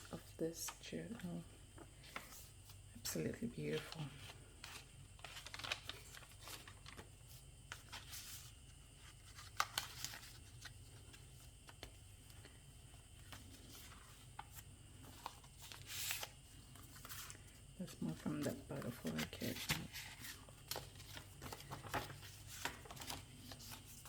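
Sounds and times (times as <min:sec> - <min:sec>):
paper crinkle: 0:01.8 - 0:24.0
paper rustling: 0:01.8 - 0:24.0.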